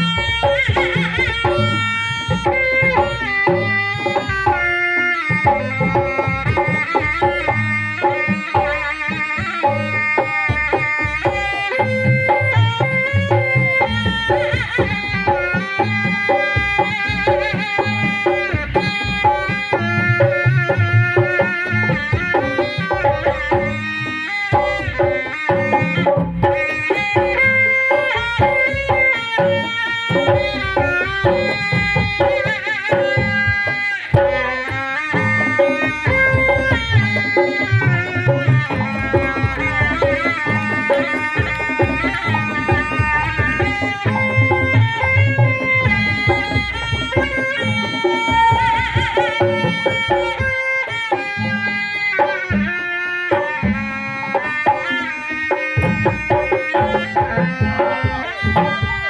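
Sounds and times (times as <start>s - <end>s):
rapid hand drums: 0.0s - 59.0s
wavering melody line: 19.2s - 50.9s.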